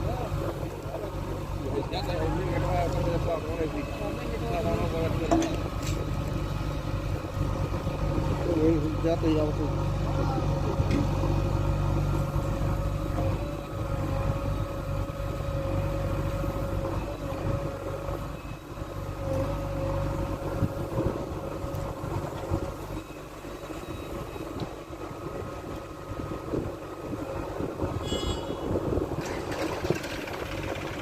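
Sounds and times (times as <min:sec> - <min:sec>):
constant whine: 0:00.0 - 0:31.0
diesel engine running: 0:00.0 - 0:31.0.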